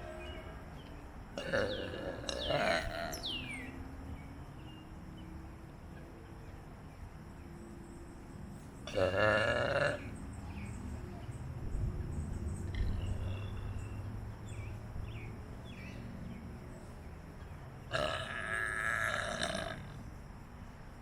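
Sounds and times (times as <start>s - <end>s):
person burping: 1.4s - 3.2s, 8.9s - 10.0s, 17.9s - 19.9s
low background rumble: 10.0s - 19.0s.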